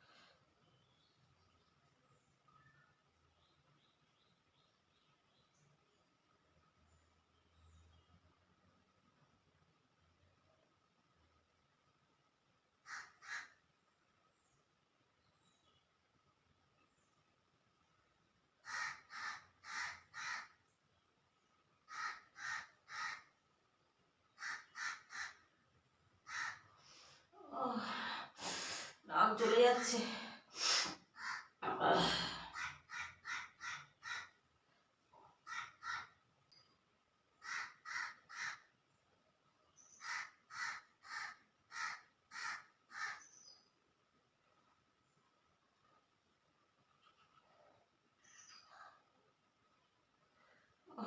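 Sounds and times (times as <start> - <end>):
crow cawing: 12.8 - 13.6, 18.6 - 20.6, 21.9 - 23.3, 24.4 - 25.5, 26.2 - 26.7, 31.2 - 31.5, 32.5 - 34.4, 35.4 - 36.2, 37.4 - 38.7, 40.0 - 43.3
small bird chirping: 39.6 - 40.2, 43.1 - 43.8, 46.9 - 49.2.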